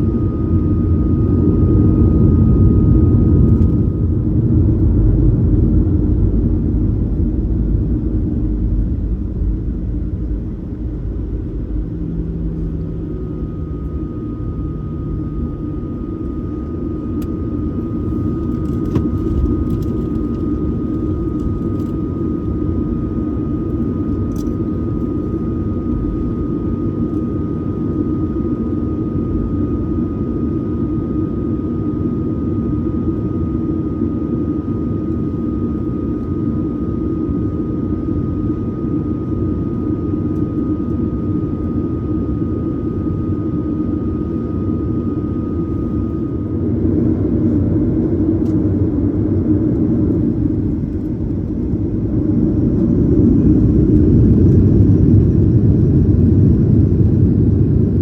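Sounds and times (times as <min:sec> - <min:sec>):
high whine: 0:00.0 - 0:31.7
jet engine and airflow rumble: 0:00.0 - 0:58.0.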